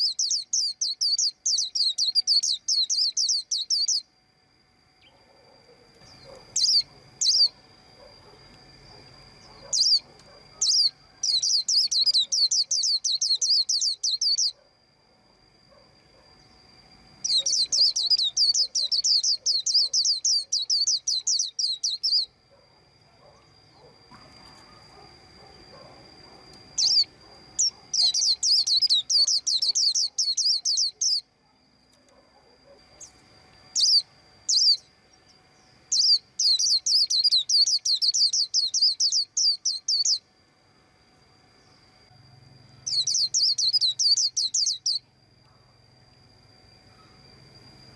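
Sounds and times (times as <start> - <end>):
bird chirping: 0.0 - 4.1, 5.0 - 14.7, 17.2 - 22.4, 23.1 - 31.3, 32.7 - 40.2, 42.8 - 45.1.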